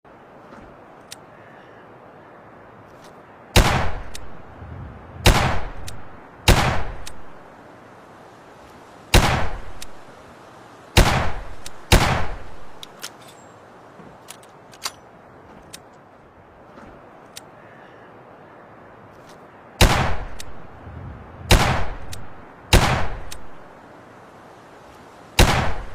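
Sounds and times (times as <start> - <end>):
faint clicks: 0.5 - 1.3, 5.8 - 6.1, 16.7 - 17.6
revolver gunshots with echo: 3.6 - 4.1, 5.2 - 5.8, 6.5 - 7.0, 9.1 - 9.7, 11.0 - 12.5, 19.8 - 20.4, 21.5 - 22.1, 22.7 - 23.3, 25.4 - 25.9.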